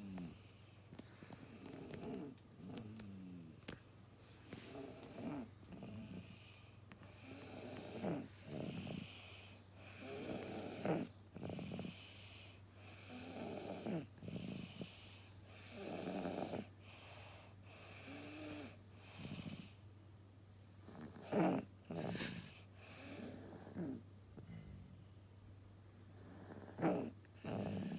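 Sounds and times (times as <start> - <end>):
steady low hum: 0.0 - 27.9
child snoring: 1.4 - 3.0, 4.6 - 6.4, 7.2 - 19.8, 20.8 - 24.0, 26.1 - 27.9.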